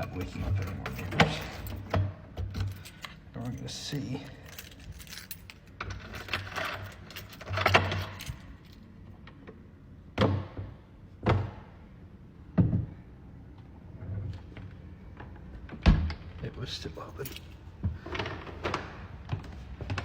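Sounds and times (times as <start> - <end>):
keys jingling in a lock: 0.0 - 1.9, 2.5 - 8.9, 16.8 - 17.7.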